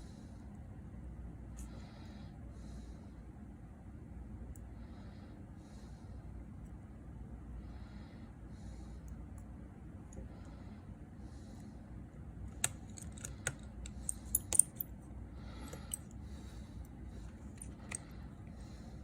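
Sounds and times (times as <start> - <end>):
small metal parts clicking: 12.5 - 14.9.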